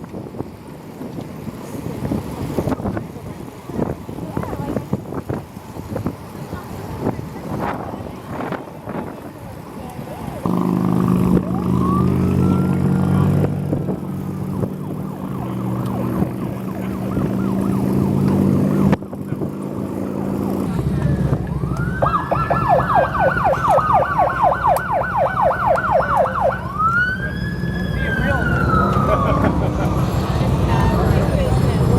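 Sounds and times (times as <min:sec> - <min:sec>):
vehicle engine running: 0:00.6 - 0:31.9
emergency vehicle siren: 0:09.6 - 0:31.9.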